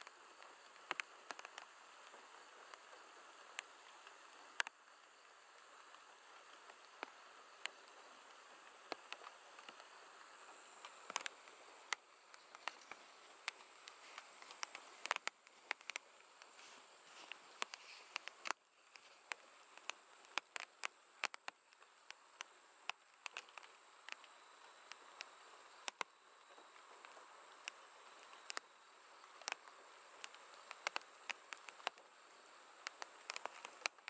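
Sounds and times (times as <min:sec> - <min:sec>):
soft insect hiss: 0:00.0 - 0:34.0
insects trilling: 0:08.7 - 0:34.0.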